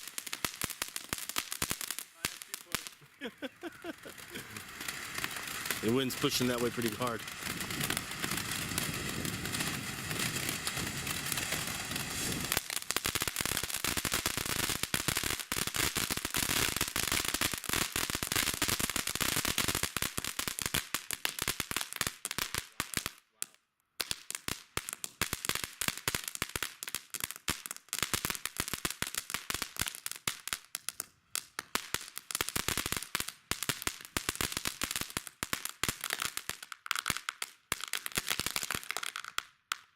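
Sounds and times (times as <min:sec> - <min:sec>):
firework hissing: 0:00.0 - 0:15.2
firework crackling pops: 0:00.0 - 0:39.9.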